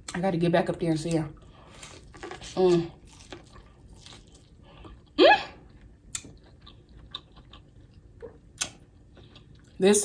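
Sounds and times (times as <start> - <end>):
soft chewing: 1.0 - 9.8.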